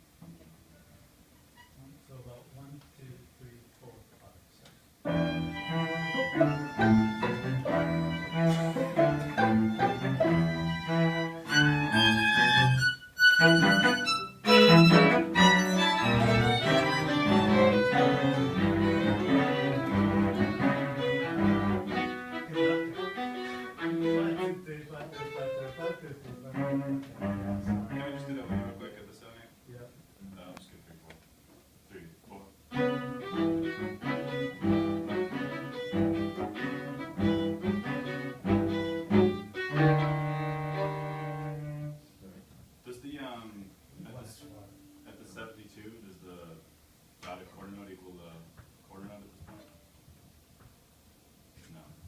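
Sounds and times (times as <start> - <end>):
low cello notes: 5.0 - 30.8, 31.9 - 46.6
string quartet playing: 5.1 - 29.1, 32.7 - 42.1.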